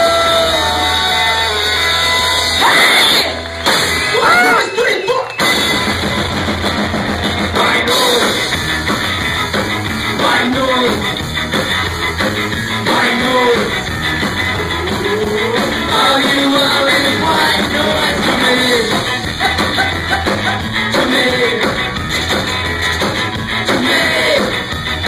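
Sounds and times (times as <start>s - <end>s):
ska punk band playing live: 0.0s - 25.0s
person singing: 12.8s - 13.8s, 14.5s - 21.8s.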